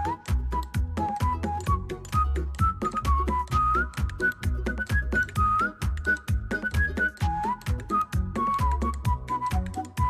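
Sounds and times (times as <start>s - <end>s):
music with steady beat: 0.0s - 10.0s
whistled melody: 0.0s - 10.0s.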